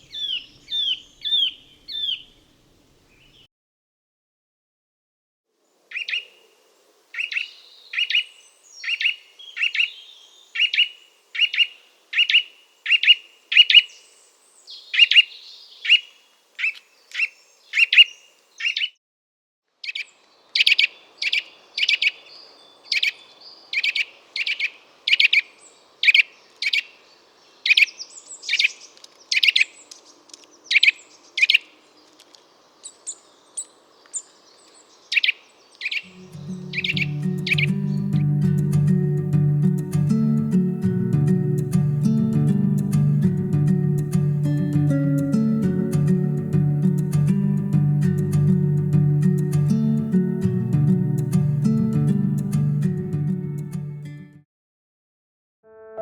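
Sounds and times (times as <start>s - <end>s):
bird singing repeated notes: 0.0s - 2.4s, 35.1s - 54.4s.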